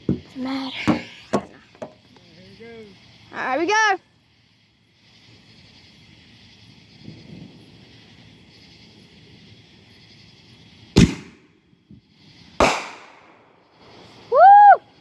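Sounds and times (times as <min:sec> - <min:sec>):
faint firework hiss: 0:00.0 - 0:15.0
loud firework bangs: 0:10.9 - 0:11.6, 0:12.5 - 0:14.4.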